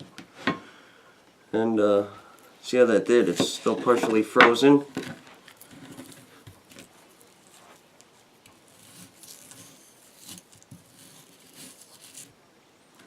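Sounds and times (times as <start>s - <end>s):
knife scraping frozen chicken: 8.5s - 12.3s.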